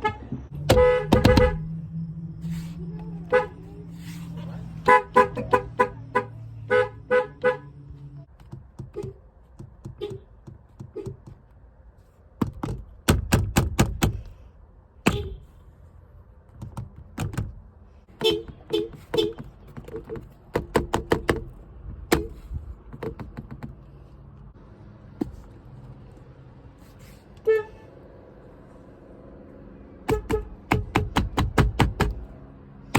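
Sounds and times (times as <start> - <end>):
car horn short beeps: 0.0 - 1.7, 15.1 - 15.5, 18.2 - 19.4
sharp clicks and thunks: 0.3 - 1.7, 8.3 - 11.6, 12.3 - 14.4, 16.4 - 23.9, 30.1 - 32.3.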